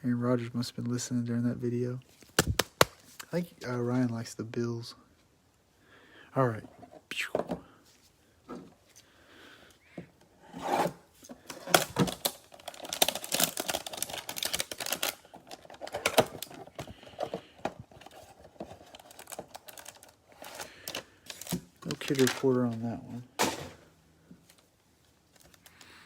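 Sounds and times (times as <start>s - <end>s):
cardboard and plastic crinkling: 11.2s - 23.8s.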